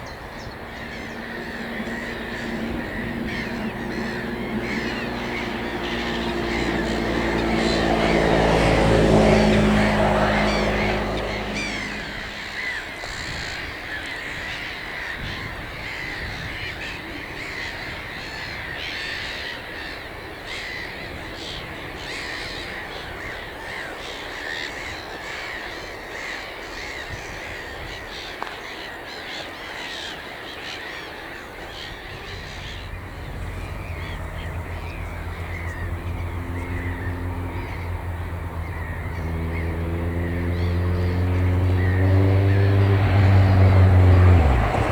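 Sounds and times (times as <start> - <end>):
motor vehicle engine: 0.0 - 13.6, 31.7 - 44.9
chorus of wild birds calling: 0.0 - 44.9.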